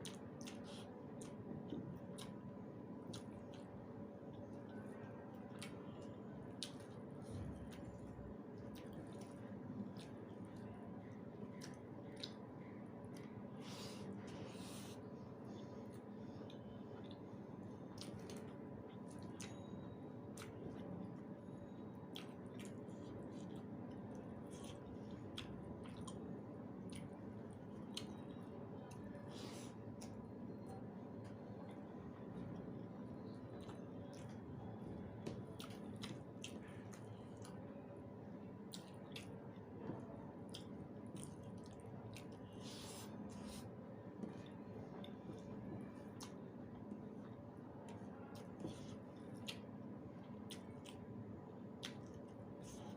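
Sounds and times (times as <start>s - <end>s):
wet chewing of food: 0.0s - 21.2s, 21.9s - 37.8s, 38.4s - 52.9s.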